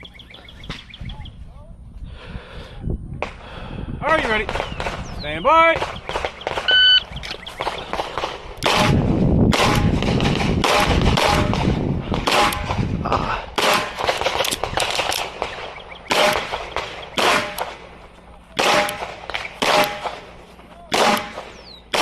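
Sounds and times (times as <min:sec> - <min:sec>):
pistol shots: 0:05.8 - 0:06.8, 0:07.6 - 0:12.8, 0:13.6 - 0:17.9, 0:18.6 - 0:22.0.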